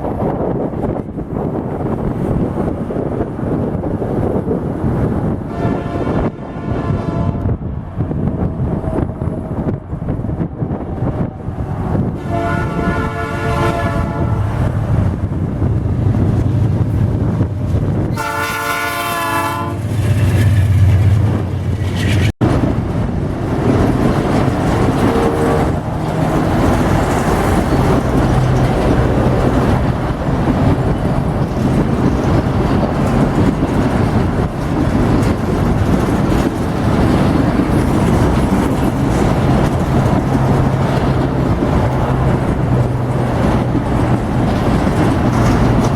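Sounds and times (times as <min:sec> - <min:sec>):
train horn blasts: 0:05.5 - 0:07.6, 0:12.2 - 0:14.6, 0:18.1 - 0:19.9, 0:25.0 - 0:25.8
train wheels clattering on rails: 0:19.6 - 0:45.9.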